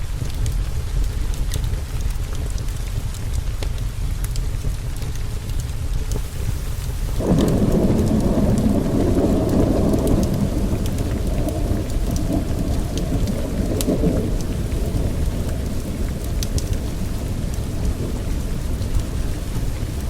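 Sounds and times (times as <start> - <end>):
steady rain: 0.0 - 20.0
sharp crackles: 0.2 - 20.0
thunder rumble: 6.1 - 20.0.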